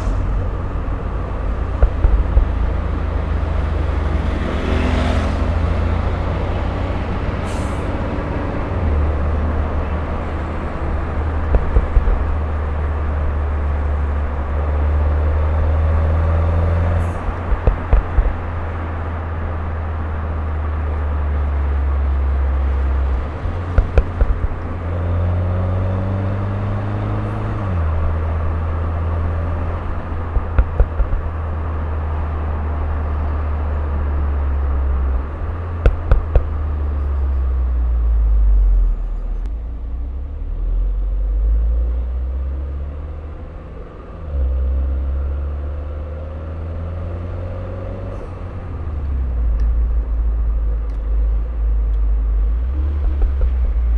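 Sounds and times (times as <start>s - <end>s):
exhaust pops and crackles: 0.0s - 5.0s, 10.0s - 25.0s, 27.3s - 38.0s, 49.0s - 53.9s
car engine accelerating: 0.0s - 53.9s.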